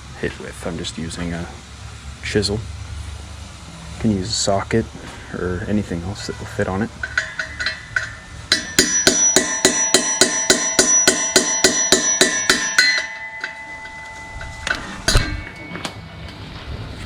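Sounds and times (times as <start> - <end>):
hammer striking steel chisel: 7.0 - 16.0.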